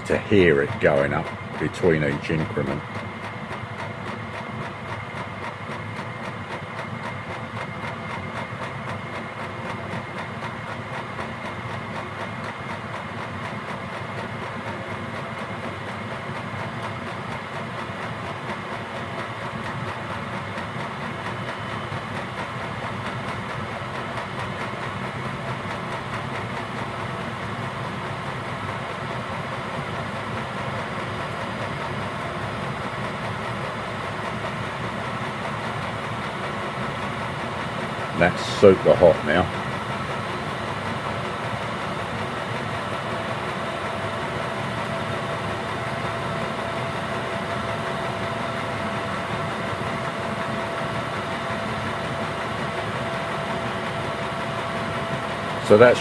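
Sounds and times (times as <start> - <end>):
heater fans humming: 0.0 - 2.9, 22.5 - 45.2.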